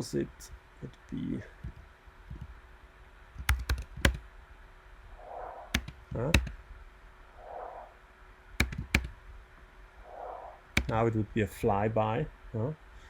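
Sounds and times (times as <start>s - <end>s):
sharp clicks: 3.4s - 4.2s, 5.7s - 6.6s, 8.6s - 9.2s, 10.7s - 11.0s
filtered noise swooshes: 4.8s - 8.5s, 9.4s - 11.2s.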